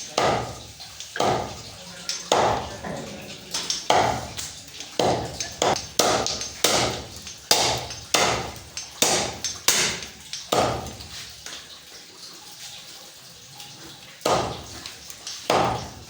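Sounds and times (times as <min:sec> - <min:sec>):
cleaver chopping on chopping block: 0:00.2 - 0:00.6, 0:01.2 - 0:01.6, 0:02.3 - 0:02.7, 0:03.9 - 0:04.3, 0:05.0 - 0:11.0, 0:14.3 - 0:14.7, 0:15.5 - 0:16.0.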